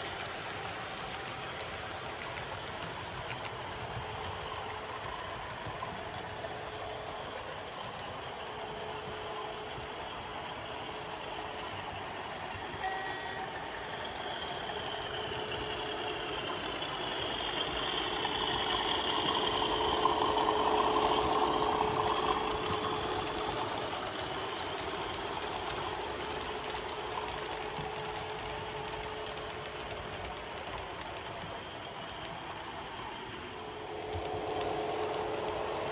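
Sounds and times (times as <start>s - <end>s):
model train running on track: 0.0s - 35.9s.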